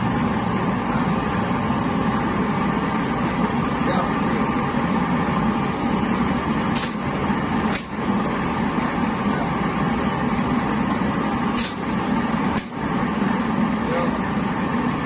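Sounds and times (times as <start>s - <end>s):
lottery machine humming: 0.0s - 15.0s
short sharp clicks: 6.8s - 7.0s, 11.6s - 11.8s.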